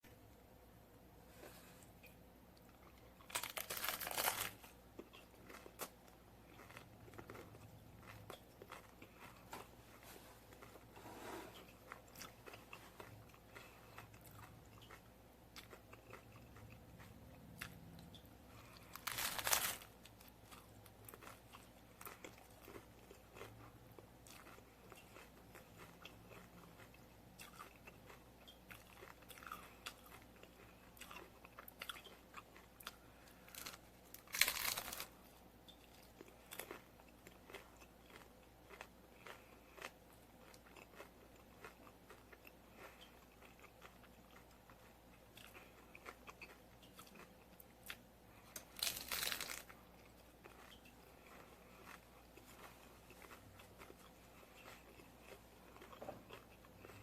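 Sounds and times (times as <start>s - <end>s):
crackly chewing: 1.4s - 57.0s
crunching bites into taco shells: 3.2s - 9.6s, 18.7s - 35.2s, 48.5s - 49.8s.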